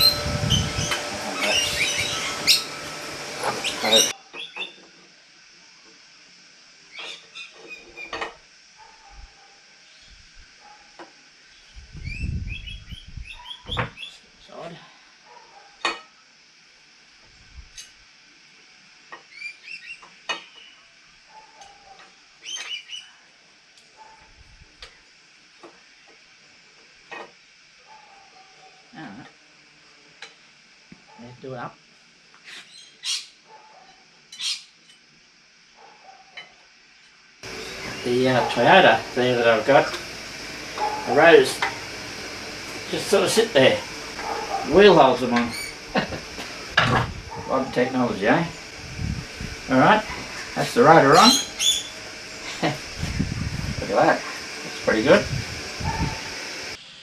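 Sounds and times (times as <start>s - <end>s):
small birds chirping: 0.0s - 2.8s, 3.5s - 4.8s, 11.4s - 14.3s, 21.4s - 23.1s, 32.4s - 33.4s, 34.3s - 34.8s, 37.4s - 38.7s, 51.0s - 52.6s.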